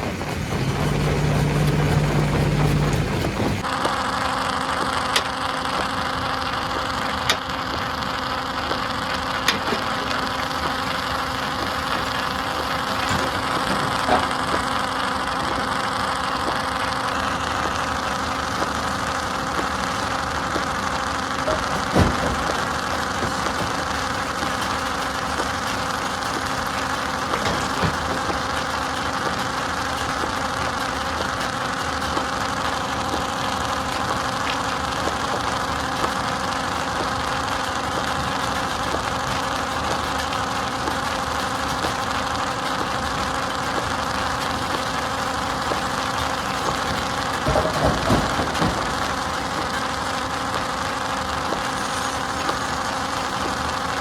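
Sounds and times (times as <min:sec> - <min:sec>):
machinery clunks and knocks: 0:00.0 - 0:03.7, 0:09.5 - 0:15.7, 0:21.4 - 0:29.4, 0:44.7 - 0:50.4
stone crusher machinery humming: 0:00.0 - 0:54.0.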